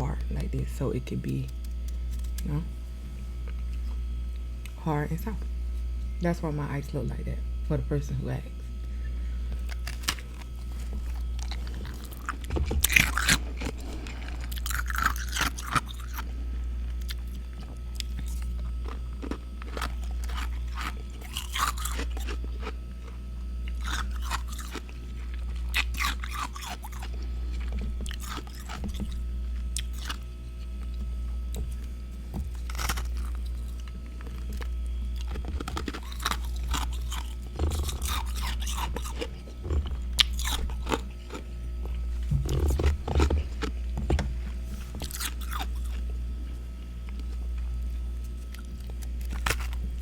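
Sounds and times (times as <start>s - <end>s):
frost being chewed: 0.0s - 6.2s, 8.5s - 50.0s
steady low hum: 0.0s - 50.0s.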